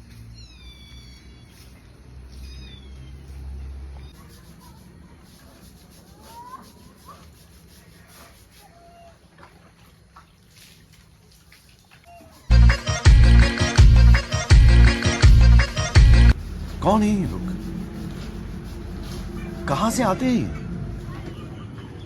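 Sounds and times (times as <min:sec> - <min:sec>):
cat meowing: 0:00.3 - 0:01.6, 0:02.3 - 0:03.3.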